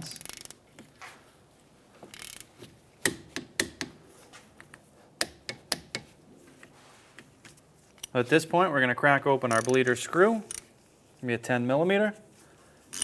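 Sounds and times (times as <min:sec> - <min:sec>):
torque wrench clicking: 0:00.0 - 0:00.6, 0:02.1 - 0:02.5, 0:09.5 - 0:09.8, 0:10.4 - 0:10.7.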